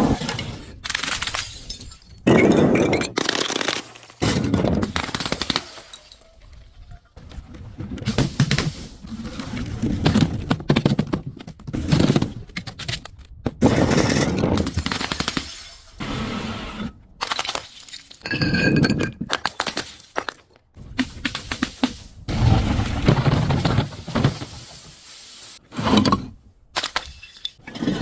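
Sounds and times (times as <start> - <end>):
glass bottles shattering: 1.1 - 6.4, 14.8 - 16.0, 17.3 - 20.3.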